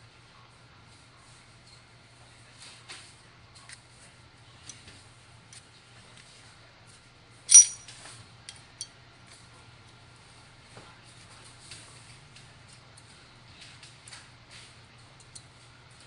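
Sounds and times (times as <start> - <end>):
small metal parts clinking: 7.5 - 7.9.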